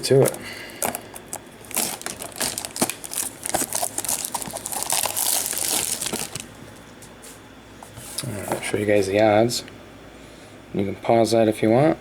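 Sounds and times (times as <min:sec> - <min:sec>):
plastic shrink wrap crinkling: 0:00.2 - 0:06.9.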